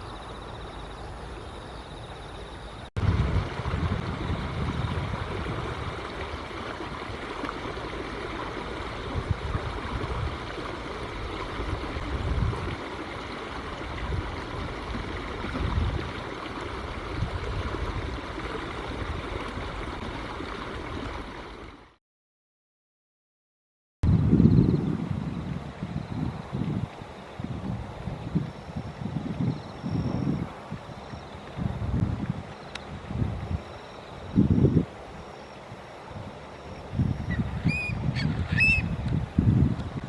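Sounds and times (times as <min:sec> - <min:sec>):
wind buffeting microphone: 0:03.0 - 0:07.2, 0:08.6 - 0:12.9, 0:13.7 - 0:20.1, 0:24.0 - 0:35.1, 0:36.1 - 0:40.0
river water rushing: 0:37.3 - 0:39.0.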